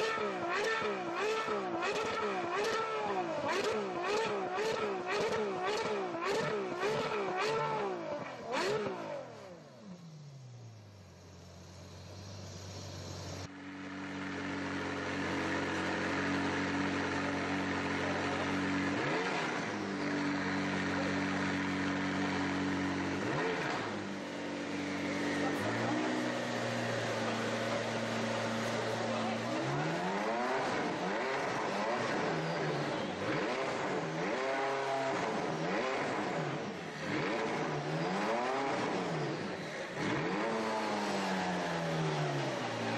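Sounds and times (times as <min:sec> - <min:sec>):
supercar engine revving high: 0:00.0 - 0:09.3, 0:15.1 - 0:42.9
supercar engine idling: 0:10.4 - 0:19.0, 0:19.6 - 0:23.2.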